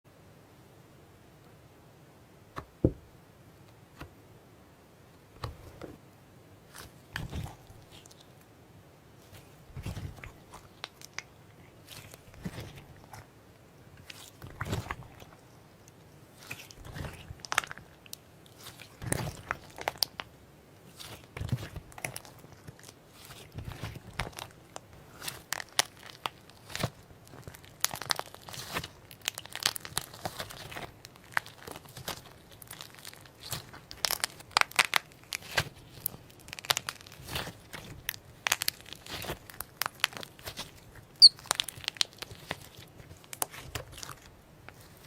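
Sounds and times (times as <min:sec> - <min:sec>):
slime squishing with crackling pops: 0:14.0 - 0:45.0.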